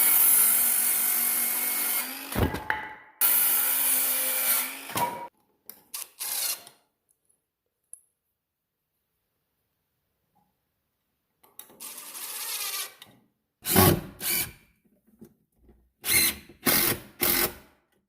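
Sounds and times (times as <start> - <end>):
power drill driving screws: 6.0 - 6.8, 13.6 - 14.6, 16.0 - 17.6.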